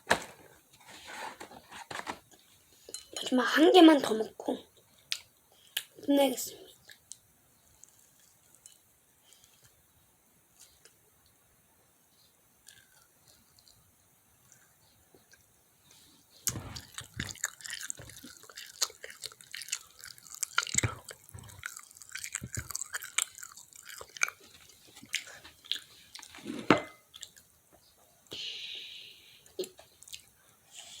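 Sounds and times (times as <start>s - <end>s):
crunchy chewing: 16.4s - 26.4s.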